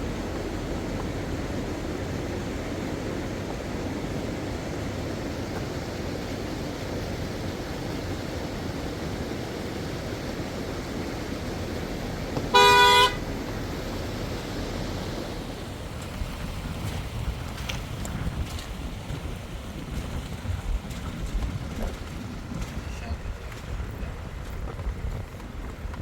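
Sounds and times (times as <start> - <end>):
vehicle horn honk: 12.4 - 13.3.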